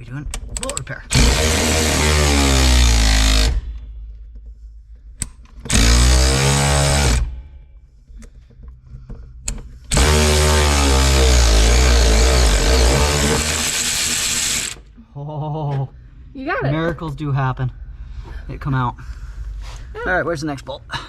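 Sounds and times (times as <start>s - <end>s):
impact wrench hammering: 1.1s - 3.9s, 5.6s - 7.4s, 9.9s - 14.9s.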